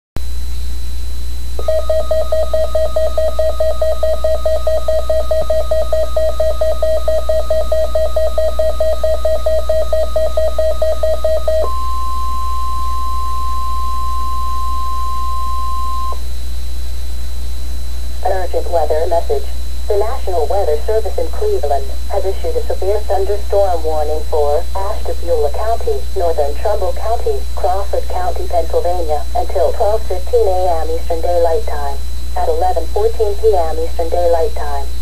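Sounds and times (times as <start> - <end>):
constant low hum: 0.2 - 35.0
steady high alarm tone: 1.2 - 28.0
rapidly pulsing alert beep: 1.6 - 16.2.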